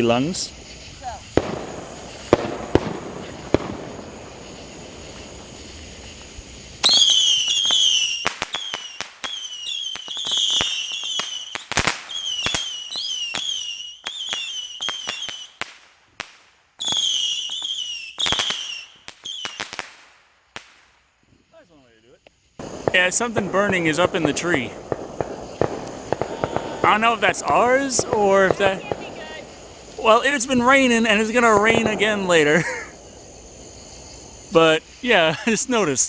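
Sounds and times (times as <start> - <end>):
fireworks cracking: 0.0 - 36.0
fireworks hissing: 0.0 - 36.0
shrill wavering whistles: 6.8 - 15.6, 16.8 - 19.7.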